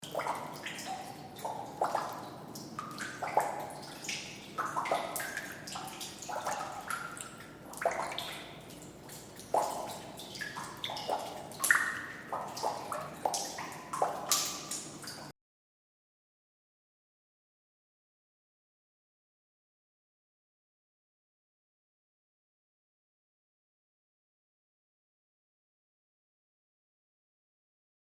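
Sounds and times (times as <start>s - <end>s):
water dripping: 0.0s - 15.3s.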